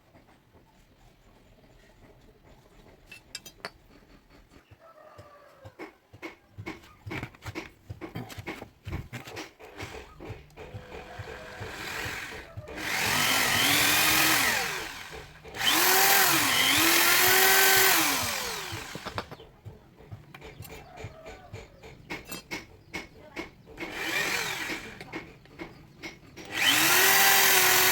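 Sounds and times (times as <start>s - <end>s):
metal clicks and knocks: 2.5s - 4.6s, 18.8s - 24.0s, 24.7s - 26.6s
power tool motor on steel: 9.7s - 19.4s, 23.8s - 25.2s, 26.4s - 27.9s.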